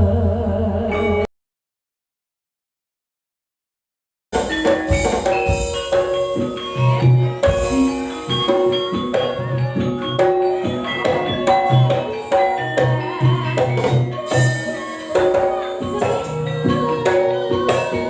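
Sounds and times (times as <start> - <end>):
drums playing rhythm: 4.4 - 18.0
gamelan-style pitched percussion: 4.4 - 18.0.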